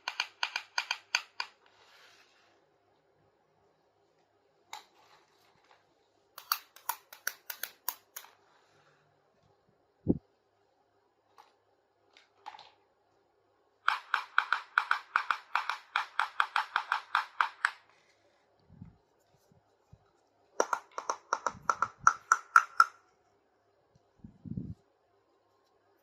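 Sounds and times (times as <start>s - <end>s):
plastic toy parts clicking: 0.0s - 1.6s, 6.4s - 8.4s.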